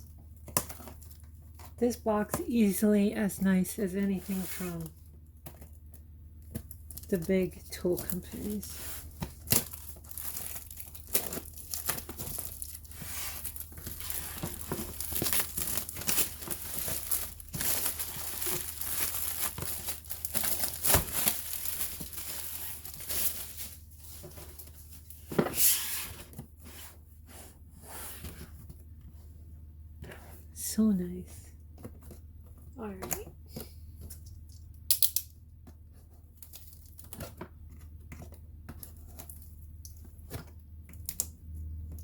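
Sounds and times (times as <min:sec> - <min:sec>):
box packaging being torn: 0:09.3 - 0:23.8.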